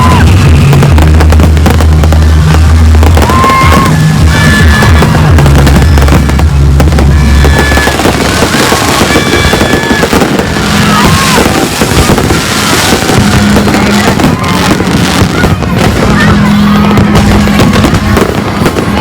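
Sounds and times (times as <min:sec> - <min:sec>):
fireworks bangs and crackles: 0:00.0 - 0:19.0
music with heavy bass: 0:00.0 - 0:19.0.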